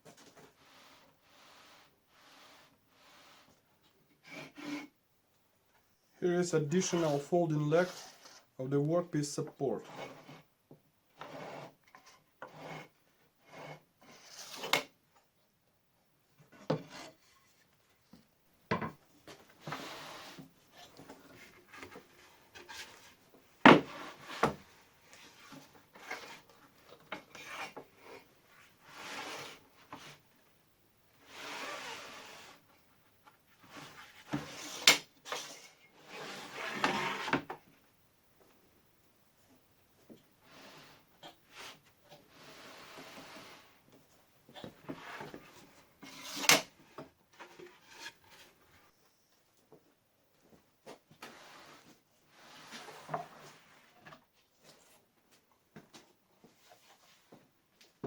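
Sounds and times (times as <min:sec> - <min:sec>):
parts sliding and scraping: 0:00.0 - 0:05.0, 0:06.3 - 0:10.5, 0:11.2 - 0:14.9, 0:19.2 - 0:30.2, 0:33.3 - 0:37.6, 0:40.4 - 0:43.9, 0:44.5 - 0:49.0, 0:50.9 - 0:55.0.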